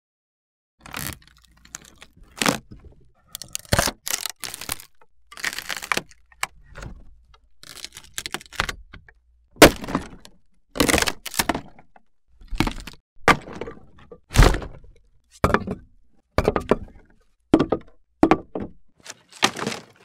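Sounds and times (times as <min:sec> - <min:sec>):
wood cracking and snapping: 0:00.8 - 0:14.8, 0:19.0 - 0:20.0.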